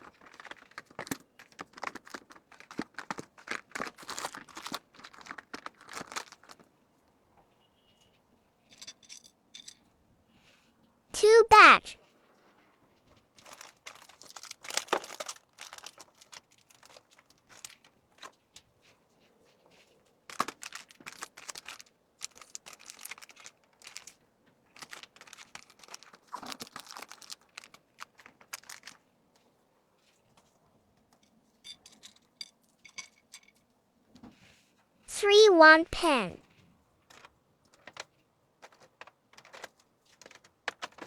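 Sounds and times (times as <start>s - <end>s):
packaging crinkling and rustling: 0.0s - 6.7s, 13.2s - 18.6s, 20.2s - 29.0s, 37.0s - 41.0s.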